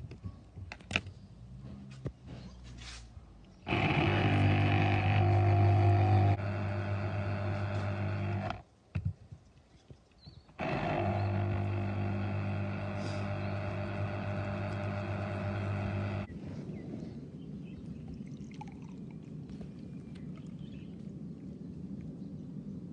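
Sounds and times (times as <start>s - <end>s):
motor humming: 3.7s - 8.6s, 10.6s - 16.3s.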